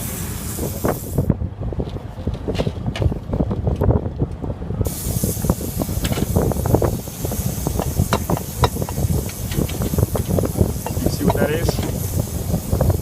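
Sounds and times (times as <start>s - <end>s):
steady hiss: 0.0s - 1.3s, 4.9s - 13.0s
heavy machinery rumbling: 4.3s - 13.0s.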